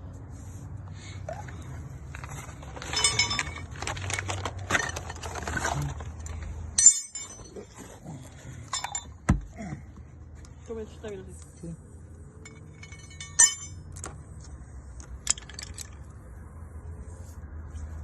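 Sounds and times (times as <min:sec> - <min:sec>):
low steady hum: 0:00.0 - 0:18.0
metal tools clinking: 0:02.1 - 0:08.0, 0:08.6 - 0:09.3, 0:12.4 - 0:14.2.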